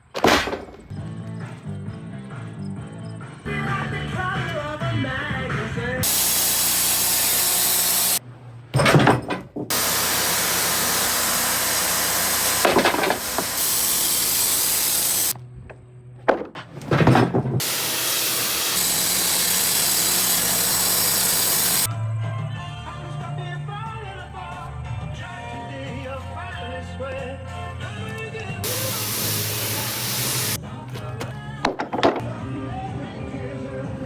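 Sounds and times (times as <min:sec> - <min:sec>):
saw cutting log: 0:06.0 - 0:08.2, 0:09.7 - 0:15.4, 0:17.6 - 0:21.9, 0:28.6 - 0:30.6.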